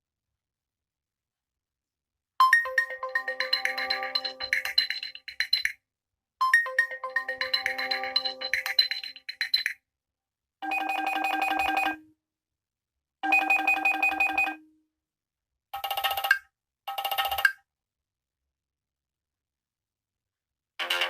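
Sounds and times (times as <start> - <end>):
fast-pulsing electronic ringtone: 2.4 - 5.8, 6.4 - 9.7, 10.6 - 12.0.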